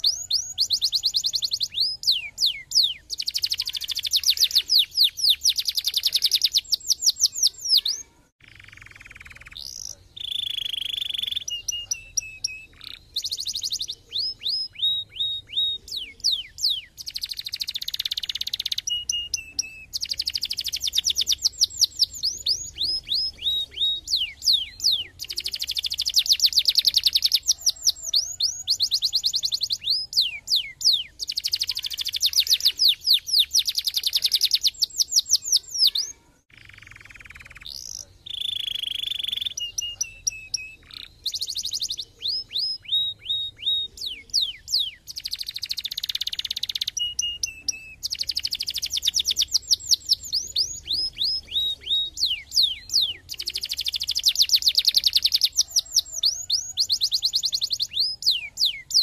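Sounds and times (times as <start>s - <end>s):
canary singing trills: 0.0s - 59.0s.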